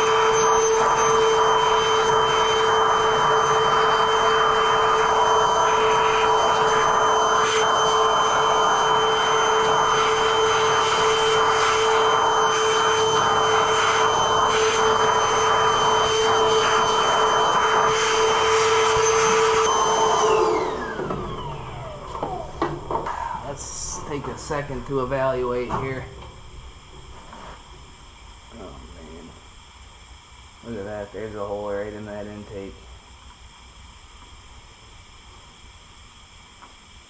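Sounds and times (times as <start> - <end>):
electric motor whining: 0.0 - 25.0.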